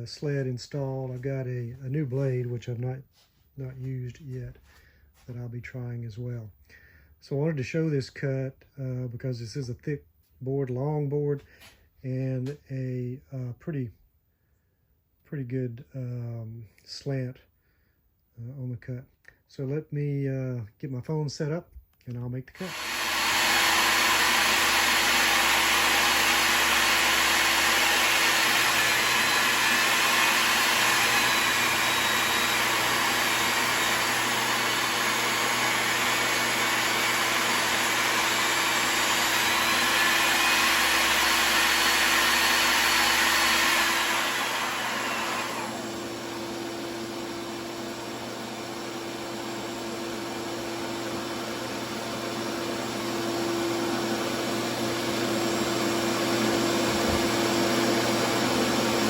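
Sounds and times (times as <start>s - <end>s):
saw winding down: 22.6s - 49.3s
table saw cutting wood: 22.6s - 59.0s.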